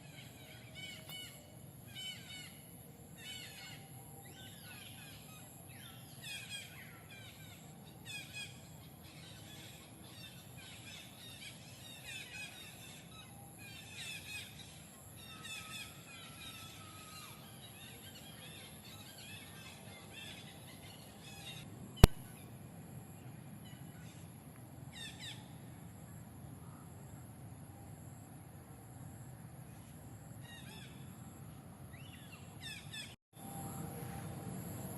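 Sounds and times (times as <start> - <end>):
outdoor background noise: 0.0 - 34.9
sharp loud click: 22.0 - 22.3.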